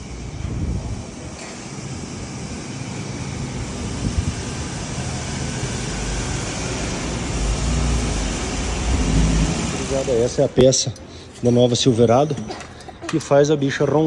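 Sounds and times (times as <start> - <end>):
vehicle engine running: 0.0 - 10.6.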